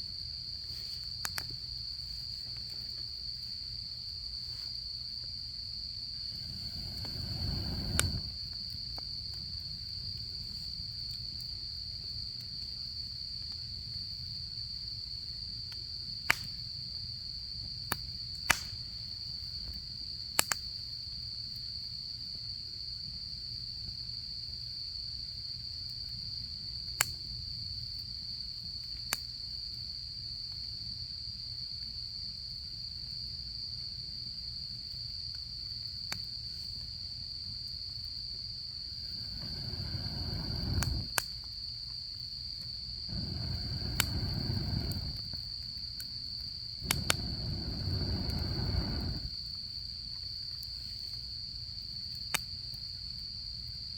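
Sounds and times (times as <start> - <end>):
crickets chirring: 0.0 - 53.9
low rustling: 6.3 - 8.4, 39.0 - 41.2, 43.1 - 45.3, 46.8 - 49.3
campfire popping and crackling: 6.3 - 8.6, 38.9 - 41.3, 43.1 - 45.4, 46.8 - 49.4.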